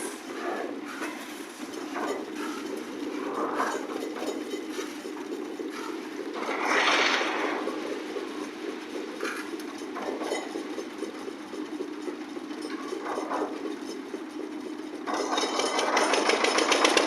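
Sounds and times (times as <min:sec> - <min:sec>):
rushing noise: 0:05.9 - 0:10.6.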